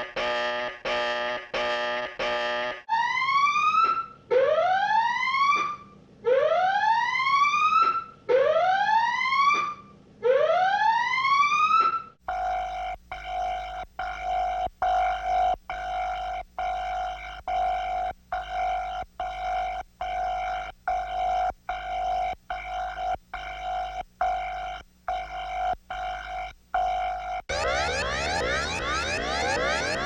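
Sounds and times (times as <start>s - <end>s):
harsh pulsing buzzing tone: 12.2s - 30.0s
electronic whooping alarm: 12.3s - 30.0s.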